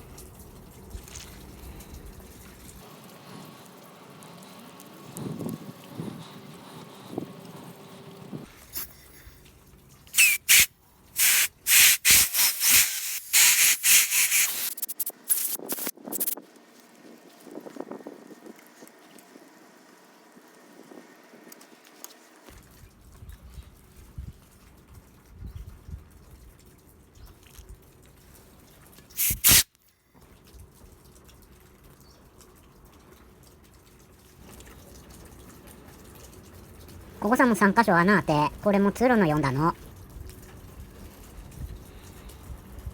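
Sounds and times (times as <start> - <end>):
small parts clicking: 10.2 - 16.4, 29.2 - 29.6
spray nozzle hissing blasts: 10.2 - 16.4, 29.2 - 29.6.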